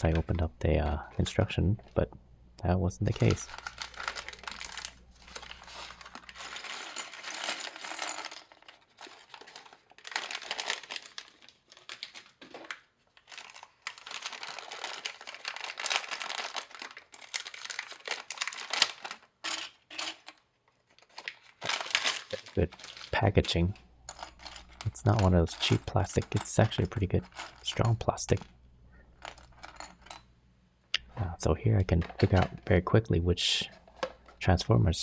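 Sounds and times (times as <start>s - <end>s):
plastic packaging crinkling: 3.0s - 28.5s.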